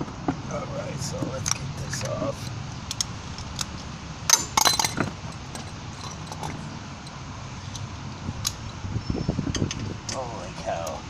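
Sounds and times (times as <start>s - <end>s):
hand tools clinking on metal: 4.3s - 6.6s.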